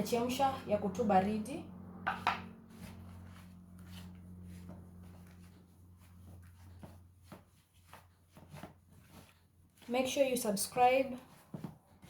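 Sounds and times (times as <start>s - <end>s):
steady low hum: 0.0s - 6.5s
light taps and scrapes: 2.1s - 10.1s, 10.8s - 12.0s.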